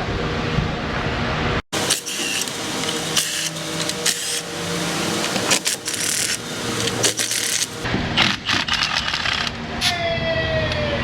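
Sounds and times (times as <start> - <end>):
power ratchet whirring: 1.8 - 7.9.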